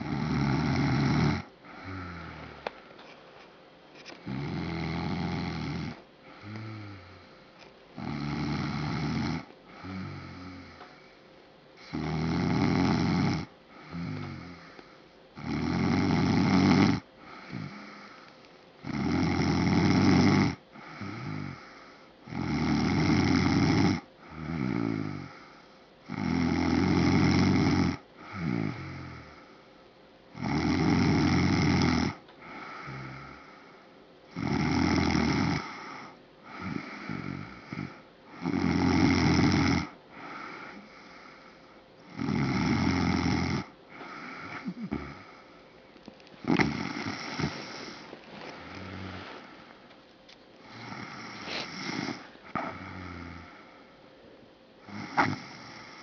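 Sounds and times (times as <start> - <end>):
loud snoring: 0.0 - 2.6, 4.2 - 7.2, 8.0 - 10.9, 11.8 - 14.7, 15.4 - 18.0, 18.8 - 25.4, 26.1 - 29.4, 30.3 - 33.5, 34.3 - 41.1, 42.1 - 45.5, 46.4 - 49.9, 50.6 - 53.7, 54.8 - 56.0
quiet broken breath: 1.6 - 4.5, 6.2 - 7.8, 13.6 - 15.3, 17.1 - 18.7, 20.7 - 22.3, 25.1 - 26.0, 28.2 - 30.0, 32.3 - 34.0, 40.1 - 42.1, 43.9 - 56.0.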